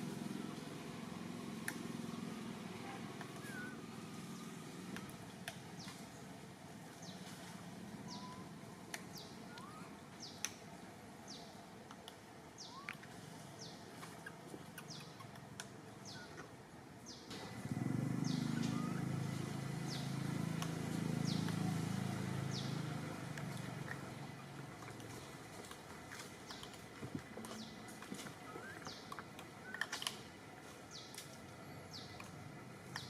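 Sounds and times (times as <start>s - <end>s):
bird chirping: 3.2s - 4.7s, 8.0s - 10.5s, 12.6s - 13.0s, 13.6s - 15.4s, 16.0s - 16.5s, 18.2s - 20.4s, 21.0s - 23.1s, 27.4s - 30.0s, 30.9s - 33.0s.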